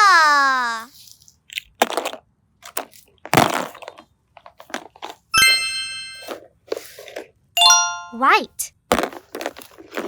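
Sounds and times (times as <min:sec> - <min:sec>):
bell-like chime: 0:05.4 - 0:06.4, 0:07.6 - 0:08.2.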